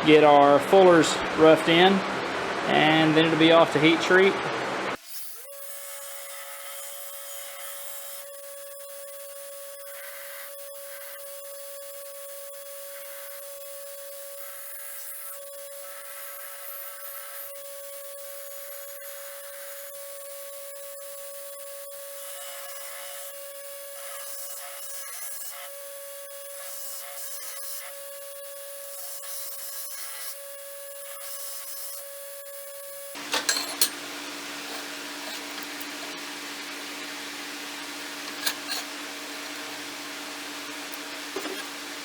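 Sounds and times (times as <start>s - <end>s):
steady motor hum: 0.0s - 24.2s, 32.0s - 42.0s
abrasive rasping on steel blade: 34.6s - 35.7s, 38.4s - 38.9s.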